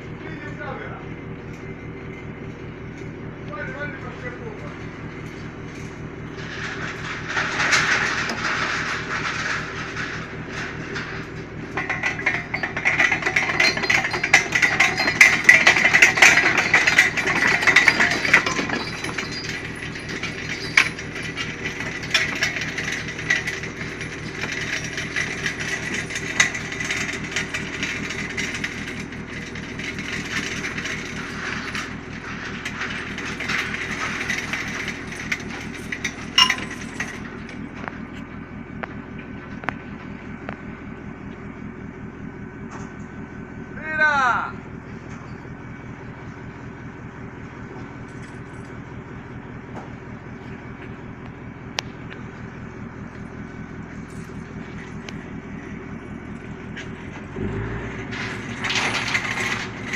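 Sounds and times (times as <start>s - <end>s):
boat diesel engine running: 0.0s - 59.9s
rattling clicks: 5.2s - 39.8s.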